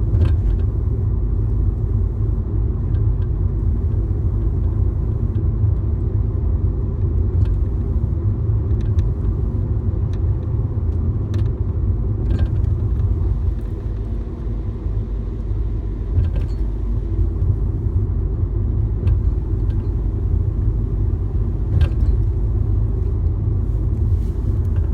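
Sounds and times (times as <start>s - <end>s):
car rumbling on the move: 0.0s - 24.9s.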